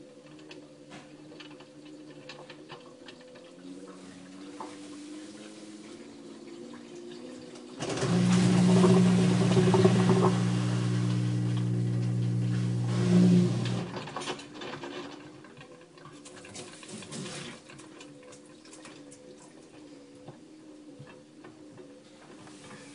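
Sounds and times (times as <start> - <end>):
washing machine motor hum: 3.6 - 14.2.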